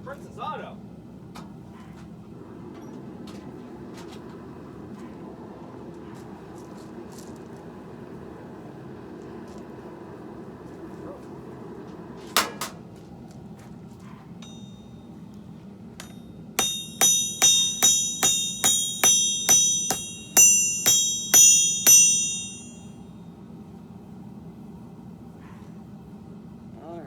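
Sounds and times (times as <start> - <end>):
hammer striking steel on anvil: 12.4 - 12.9, 14.4 - 15.1, 16.0 - 23.0.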